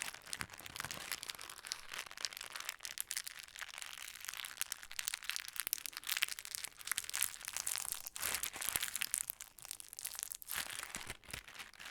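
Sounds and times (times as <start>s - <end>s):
plastic bag crinkling: 0.0s - 3.3s.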